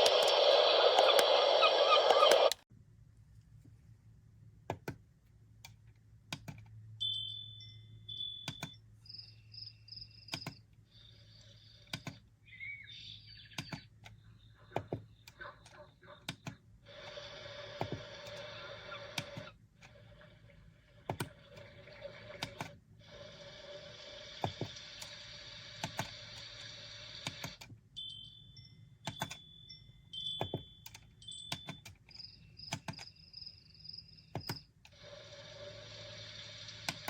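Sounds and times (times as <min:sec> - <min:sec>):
short high chirping tones: 0:07.0 - 0:10.4, 0:28.0 - 0:34.3.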